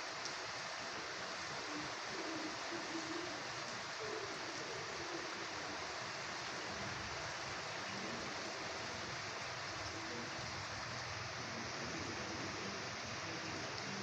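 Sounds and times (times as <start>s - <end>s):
light rain hissing: 0.0s - 14.0s.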